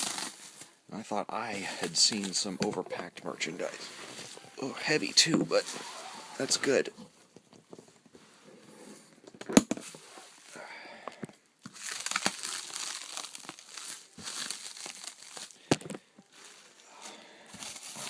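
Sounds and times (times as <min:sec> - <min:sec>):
plastic wrap crinkling and tearing: 0:00.0 - 0:00.7, 0:11.6 - 0:18.0.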